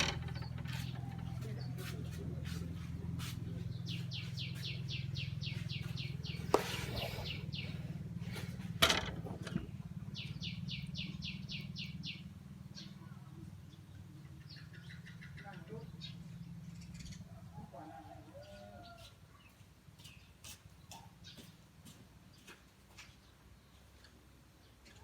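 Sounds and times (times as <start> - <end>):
sharp knocks: 0.0 - 1.4, 8.8 - 9.7
bird chirping rapidly: 3.7 - 8.4, 10.1 - 13.0.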